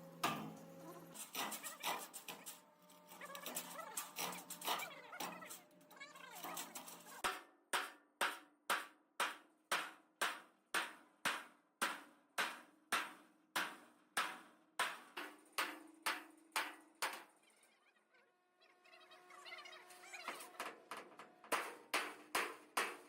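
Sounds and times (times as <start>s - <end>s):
hammer striking steel plate: 0.2s - 0.6s, 6.5s - 17.2s, 20.6s - 23.0s.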